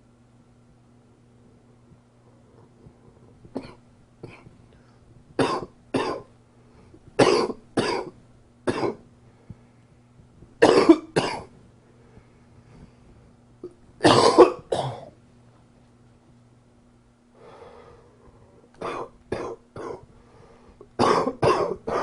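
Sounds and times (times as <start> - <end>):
man coughing: 5.4 - 6.3, 7.2 - 8.1, 8.7 - 9.0, 10.6 - 11.5, 14.0 - 15.1, 18.8 - 20.0, 21.0 - 22.0.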